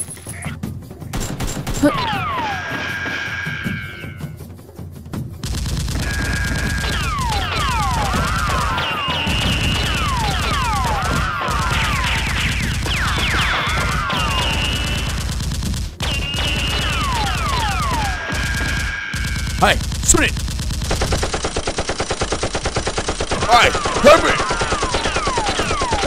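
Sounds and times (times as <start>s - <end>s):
rapid automatic gunfire: 1.1s - 1.9s, 5.4s - 26.0s
falling whistle-like tones: 6.1s - 15.2s, 16.0s - 19.5s.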